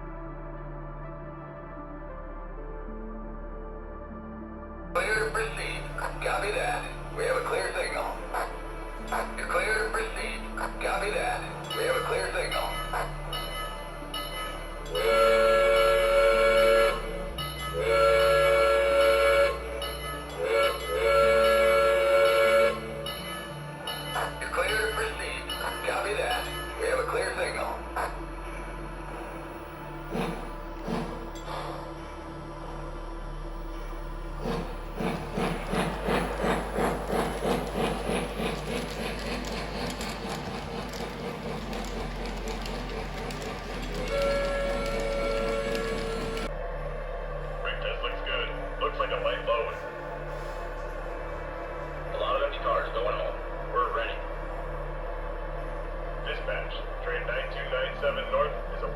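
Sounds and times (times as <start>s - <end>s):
model locomotive whistle blowing: 14.9s - 23.5s, 34.4s - 46.5s.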